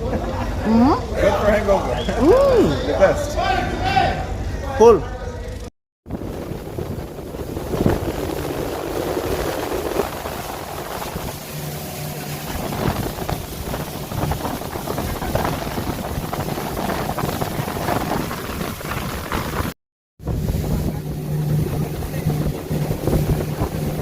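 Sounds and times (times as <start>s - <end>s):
motorboat engine drone: 5.4s - 24.0s
rushing water: 6.1s - 24.0s
wind buffeting microphone: 6.1s - 24.0s.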